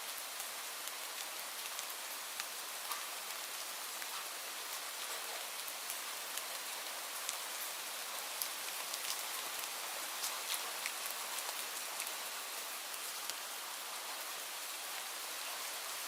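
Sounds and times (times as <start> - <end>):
light rain falling: 0.0 - 16.0.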